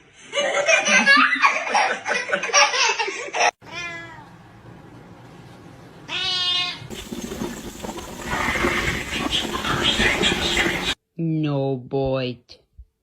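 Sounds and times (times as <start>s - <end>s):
cat meowing: 3.6s - 4.3s.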